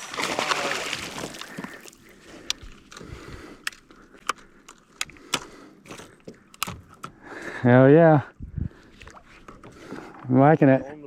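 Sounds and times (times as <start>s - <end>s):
fishing gear clicks and knocks: 1.3s - 7.2s.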